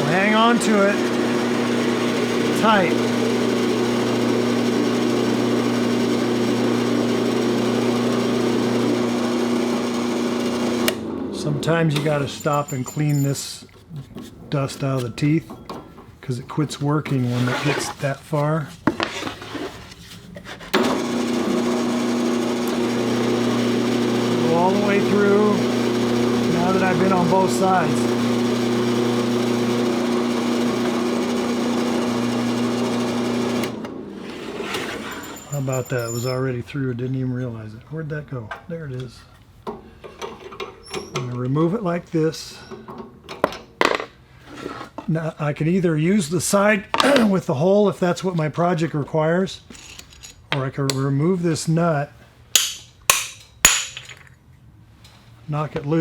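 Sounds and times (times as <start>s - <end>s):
drill press hole saw boring wood: 0.0s - 13.2s, 20.8s - 36.3s.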